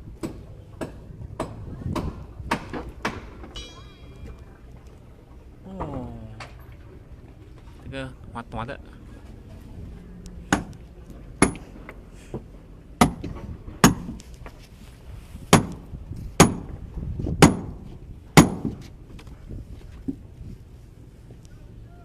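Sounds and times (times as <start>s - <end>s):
hammer blows ringing: 3.5s - 4.6s.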